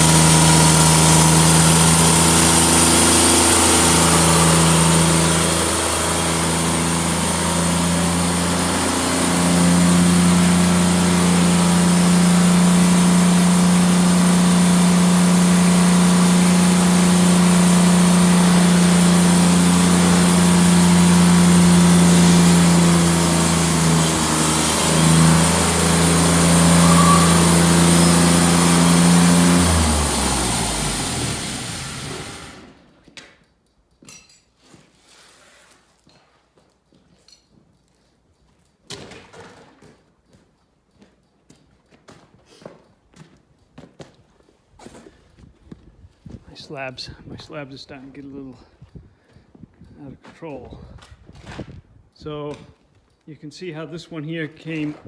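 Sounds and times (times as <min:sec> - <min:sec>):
band blade cutting wood: 0:00.0 - 0:32.9
sawmill engine running: 0:00.0 - 0:33.0.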